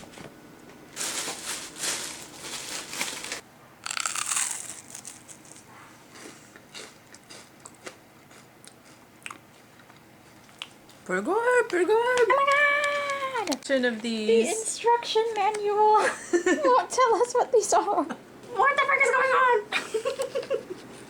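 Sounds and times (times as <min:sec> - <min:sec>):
packaging crinkling and rustling: 0:00.9 - 0:03.4.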